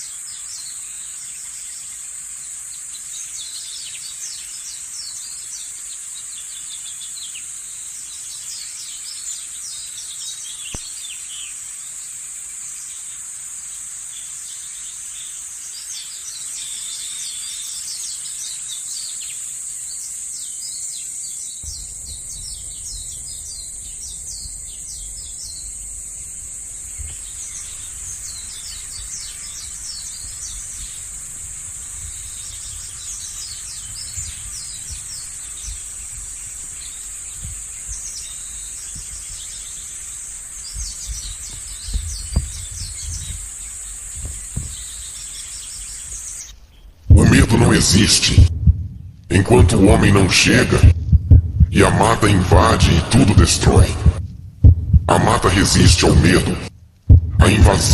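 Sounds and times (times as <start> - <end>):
high insect drone: 0.0 - 46.5
low rumble: 21.6 - 28.5, 48.4 - 50.1, 50.8 - 57.9.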